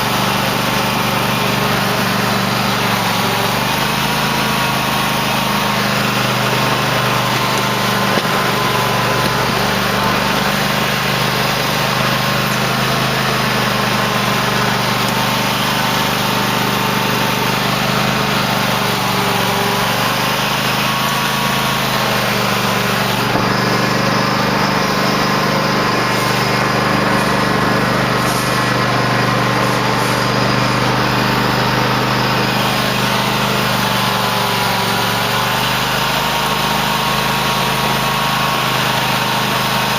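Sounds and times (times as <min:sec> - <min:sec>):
lawn tractor engine running: 0:00.0 - 0:39.9.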